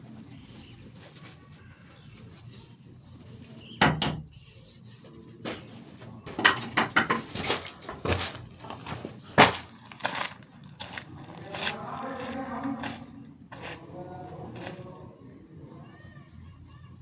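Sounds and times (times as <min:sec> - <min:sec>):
hand tools and pipe fittings clattering: 0:03.6 - 0:10.4.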